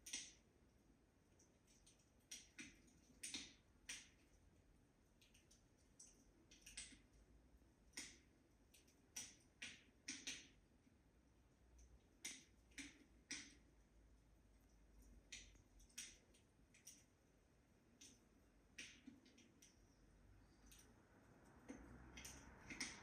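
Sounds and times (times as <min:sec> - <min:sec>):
wood fire crackling: 0:00.0 - 0:00.4, 0:11.6 - 0:23.0.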